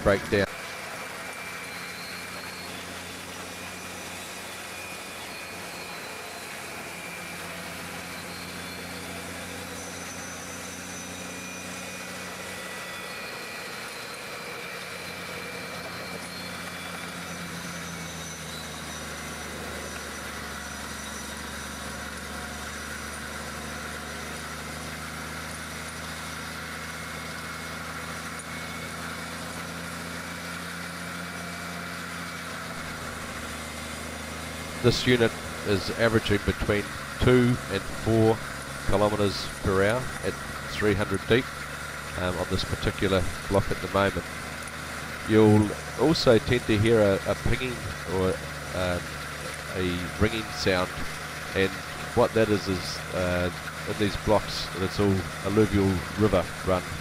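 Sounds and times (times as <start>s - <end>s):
diesel stump grinder running: 0.0s - 57.0s
faint high whine: 0.0s - 57.0s.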